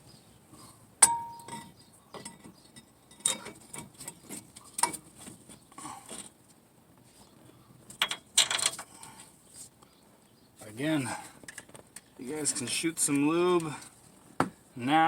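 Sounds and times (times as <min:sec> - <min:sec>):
metal tools clinking and knocking: 0:01.0 - 0:04.2, 0:08.0 - 0:08.9.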